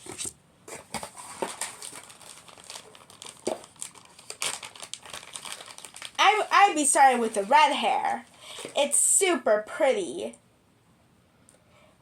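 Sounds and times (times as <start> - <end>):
packaging crinkling and rustling: 0.0 - 8.8.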